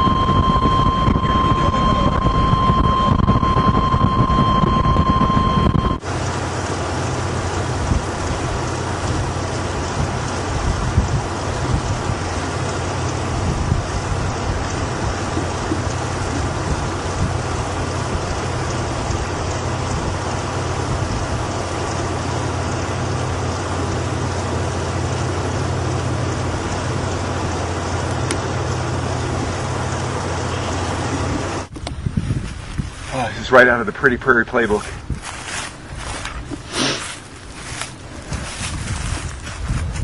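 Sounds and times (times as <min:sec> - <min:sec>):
car engine and road hum: 0:00.0 - 0:40.0
rushing hiss: 0:36.6 - 0:38.0.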